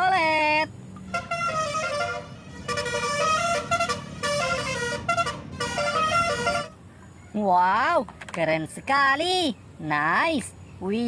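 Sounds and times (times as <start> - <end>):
musical bus horn melody: 1.0 - 6.8.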